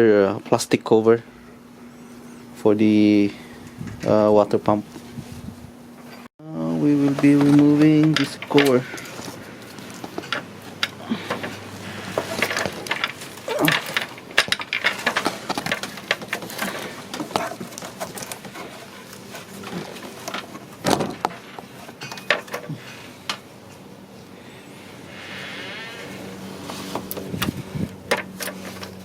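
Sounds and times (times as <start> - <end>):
hand tools clicking and knocking: 6.8 - 23.5.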